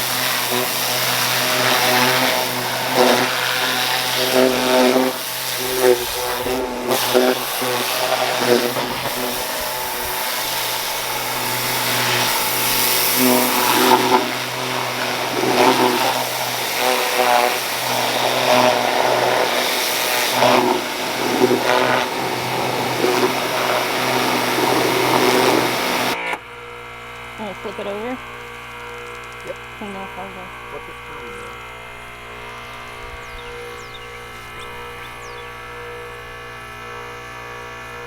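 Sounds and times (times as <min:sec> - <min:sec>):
pressure washer spraying: 0:00.0 - 0:26.2.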